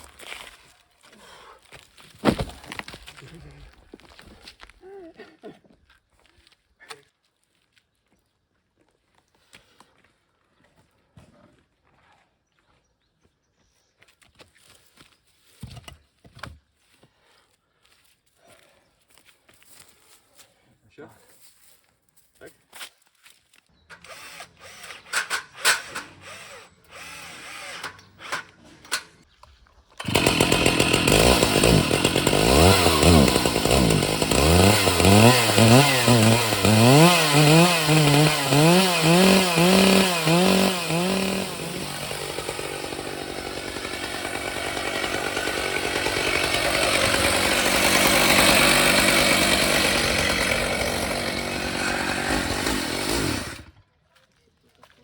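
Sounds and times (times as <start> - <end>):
chainsaw revving and cutting: 24.0 - 28.6, 30.0 - 53.8.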